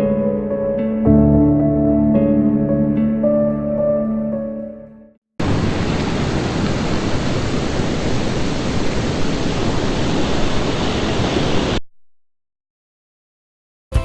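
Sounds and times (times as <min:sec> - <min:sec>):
ocean surf washing: 0:05.4 - 0:11.8.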